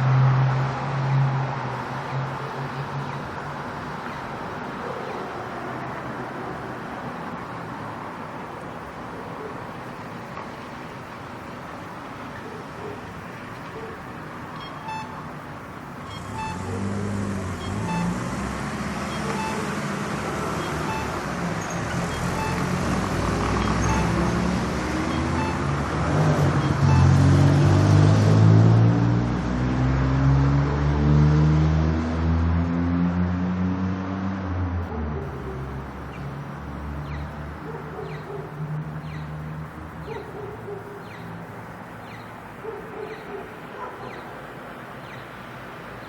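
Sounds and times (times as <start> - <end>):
street traffic: 0.0 - 46.0
crossing signal beeping: 13.5 - 18.4, 19.0 - 27.6
car engines accelerating: 15.6 - 42.6.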